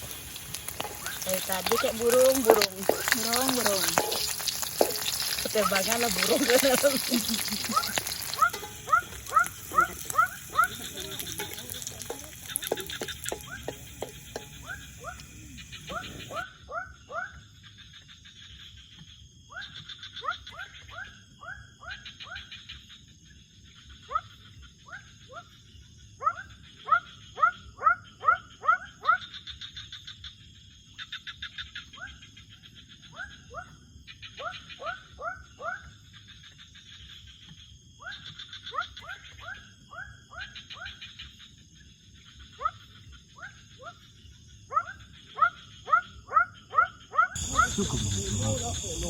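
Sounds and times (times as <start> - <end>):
pulsed trilling calls: 0.0 - 16.4, 47.4 - 49.0.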